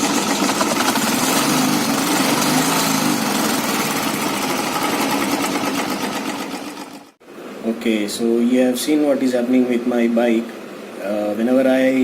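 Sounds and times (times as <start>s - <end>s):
motorcycle engine idling: 0.0s - 7.2s.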